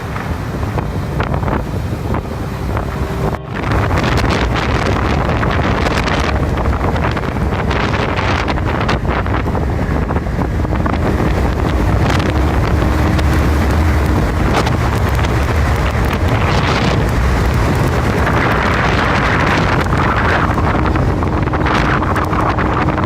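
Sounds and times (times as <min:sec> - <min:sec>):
strong wind on microphone: 0:00.0 - 0:23.0.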